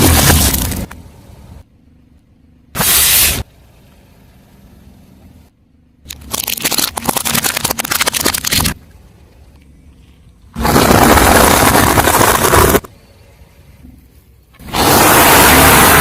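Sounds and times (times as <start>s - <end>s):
car tyre crushing something crunchy: 0.0s - 1.0s.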